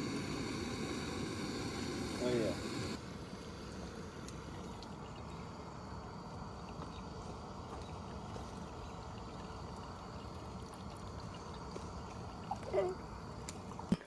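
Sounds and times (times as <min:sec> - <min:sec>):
campfire crackling and popping: 0:00.0 - 0:05.0.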